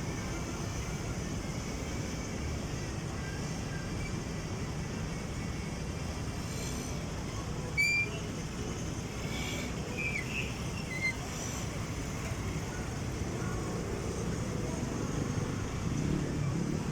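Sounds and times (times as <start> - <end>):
high-pitched wheel squeals: 7.6 - 8.5, 9.3 - 11.7.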